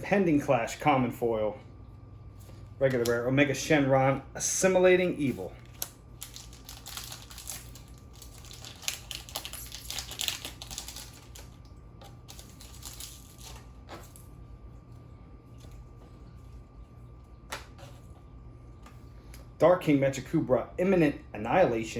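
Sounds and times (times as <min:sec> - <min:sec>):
foil pack crinkling: 0:05.5 - 0:14.3.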